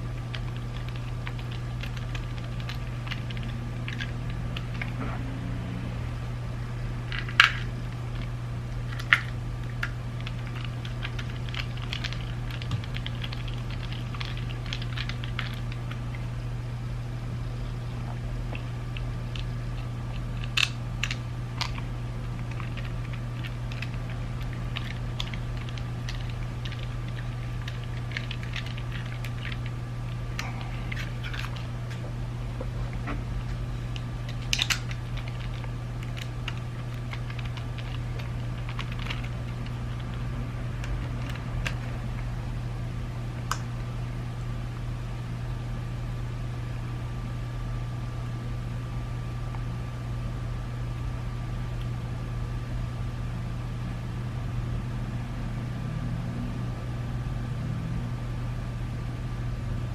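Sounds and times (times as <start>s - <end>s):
steady low hum: 0.0s - 59.9s
plastic parts clicking: 34.3s - 40.1s.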